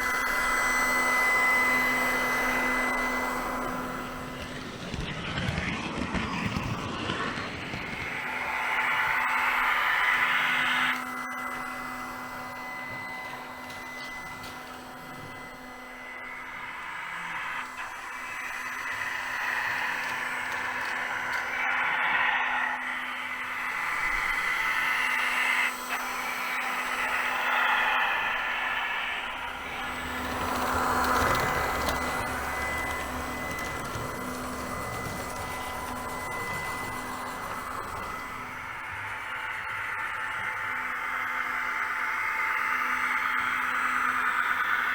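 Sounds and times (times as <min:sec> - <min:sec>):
low hum: 0:00.0 - 0:41.6
whirring motor and fan: 0:00.0 - 0:44.9
electronic diesel engine sound: 0:07.0 - 0:40.9.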